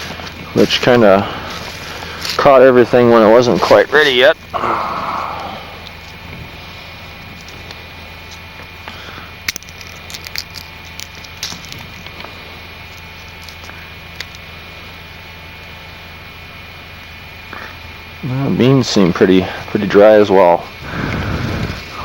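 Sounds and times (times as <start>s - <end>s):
dry pods crackling and snapping: 0.0s - 2.7s, 3.4s - 14.6s
sharp cracks: 9.4s - 12.2s.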